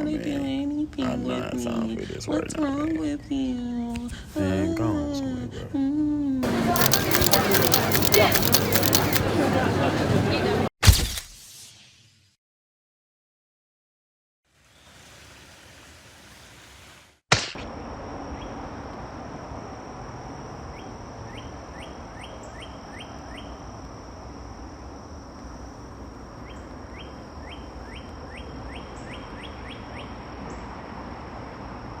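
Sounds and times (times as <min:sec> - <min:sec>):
outdoor ambience: 0:00.0 - 0:12.4, 0:14.6 - 0:32.0
sharp click: 0:06.4 - 0:09.2.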